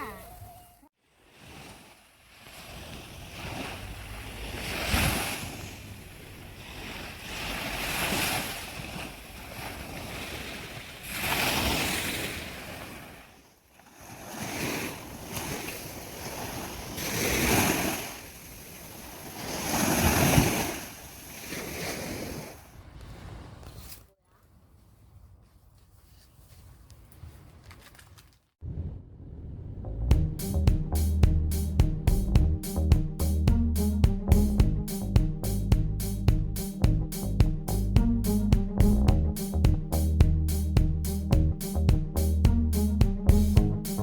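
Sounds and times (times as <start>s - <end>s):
sea waves breaking on sand: 1.0s - 22.7s.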